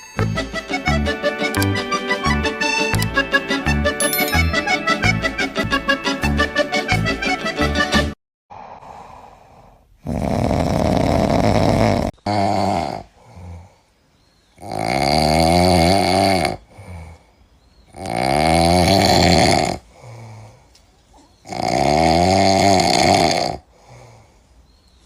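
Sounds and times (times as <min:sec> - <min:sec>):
faint breath: 0:08.5 - 0:10.0, 0:19.8 - 0:21.4, 0:23.6 - 0:24.9
monkey snoring loudly: 0:08.5 - 0:24.4.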